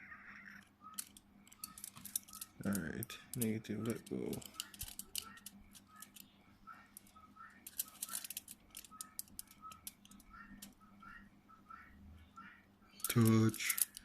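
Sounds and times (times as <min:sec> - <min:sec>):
small tools clicking: 0:00.9 - 0:06.3, 0:07.0 - 0:10.8, 0:13.0 - 0:14.0.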